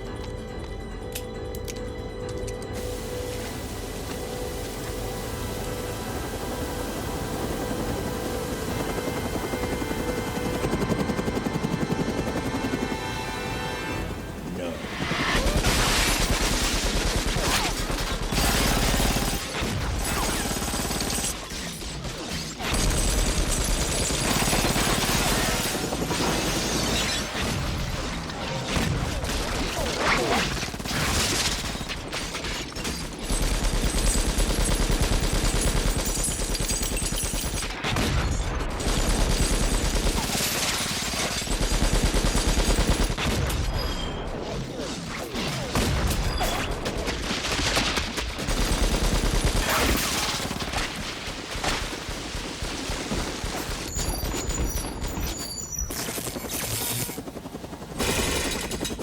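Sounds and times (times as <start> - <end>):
machine gun firing bursts: 15.3 - 43.9, 45.1 - 59.0.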